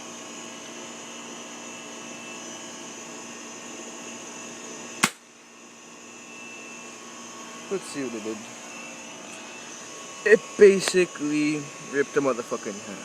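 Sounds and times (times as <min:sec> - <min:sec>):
steady background hum: 0:00.0 - 0:13.0
airsoft gun shot hitting can: 0:05.0 - 0:05.2.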